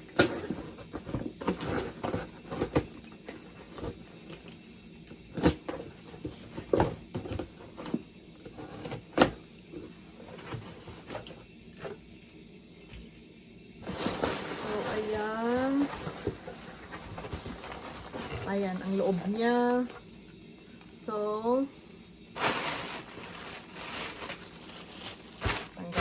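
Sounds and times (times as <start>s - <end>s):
packaging rustling: 13.8s - 20.1s, 22.4s - 26.0s
cardboard box being opened: 15.7s - 19.1s.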